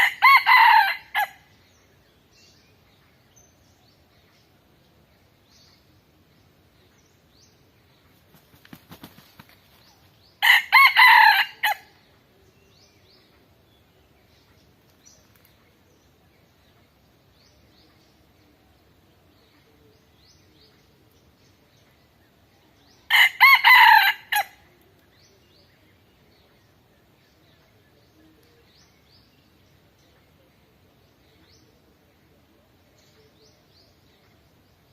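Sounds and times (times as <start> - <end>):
rooster crowing: 0.0 - 1.3, 10.4 - 11.8, 23.1 - 24.5
small birds chirping: 1.0 - 10.6.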